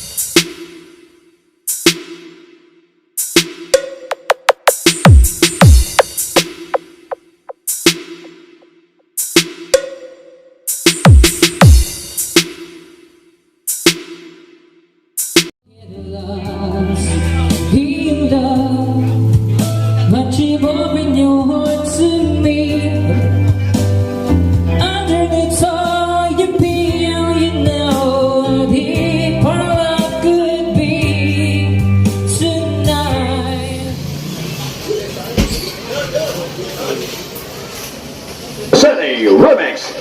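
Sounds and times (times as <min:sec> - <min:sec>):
song with heavy bass: 0:03.3 - 0:08.4, 0:10.9 - 0:12.4, 0:16.2 - 0:34.4.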